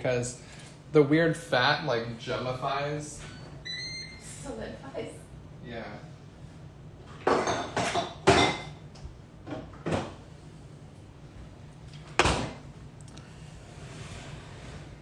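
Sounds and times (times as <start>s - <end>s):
kitchen knocks and clacks: 7.2s - 8.8s, 9.4s - 10.2s.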